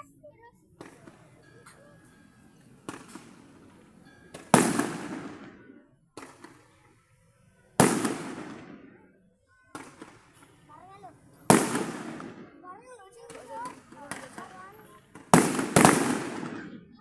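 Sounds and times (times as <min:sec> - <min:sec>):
fireworks booming: 0:04.3 - 0:06.7, 0:07.8 - 0:08.9, 0:11.5 - 0:12.6, 0:13.2 - 0:17.0.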